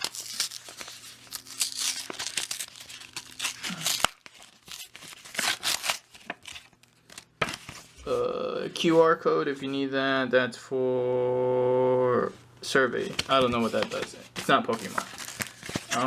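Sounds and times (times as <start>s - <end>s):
foil card packs tearing: 0.0s - 7.9s, 13.1s - 16.0s
wrappers crinkling: 0.0s - 7.9s, 13.0s - 16.0s.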